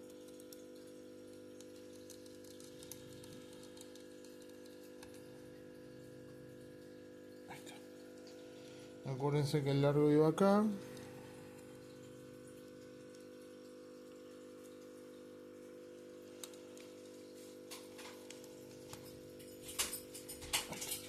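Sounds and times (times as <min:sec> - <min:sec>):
steady low hum: 0:00.8 - 0:13.4.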